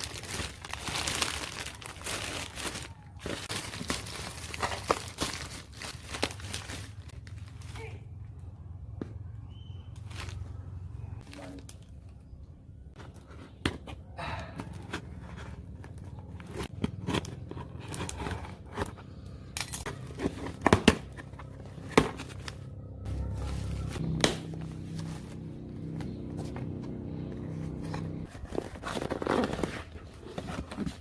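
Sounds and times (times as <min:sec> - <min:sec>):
packaging being opened: 0:00.0 - 0:07.2.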